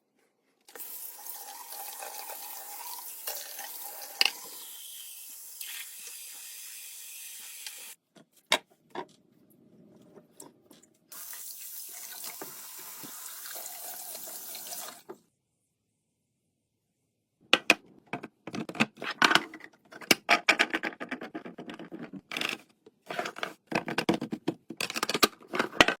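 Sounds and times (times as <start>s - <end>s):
tap running water into sink: 0.7s - 4.7s, 11.1s - 15.0s.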